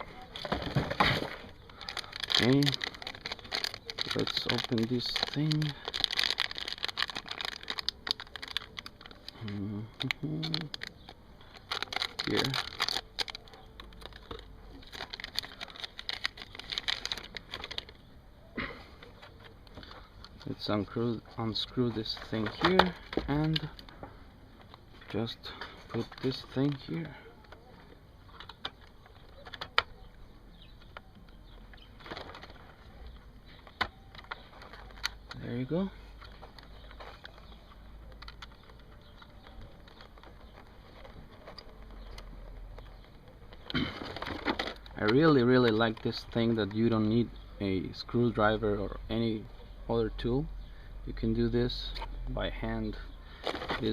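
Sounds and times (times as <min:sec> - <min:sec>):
plastic packaging crinkling: 0:00.1 - 0:18.1, 0:30.7 - 0:47.0, 0:53.3 - 0:53.9.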